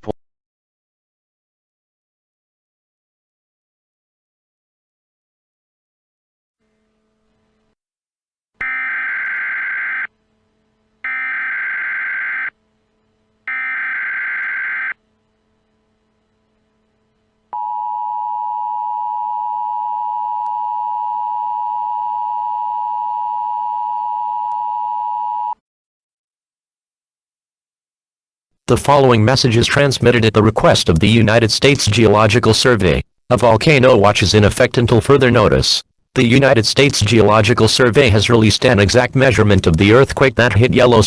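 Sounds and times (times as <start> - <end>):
data tone bursts: 8.6 - 10.1, 11.1 - 12.6, 13.5 - 15.0.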